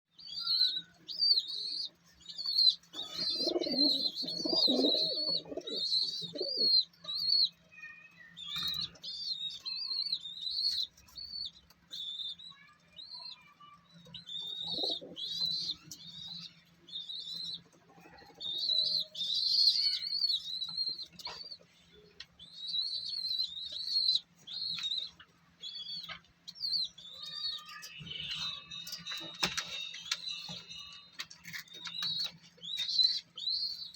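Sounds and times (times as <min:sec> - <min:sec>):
birds chirping: 0:00.1 - 0:33.9
pigeons cooing: 0:03.0 - 0:06.9, 0:14.4 - 0:15.8.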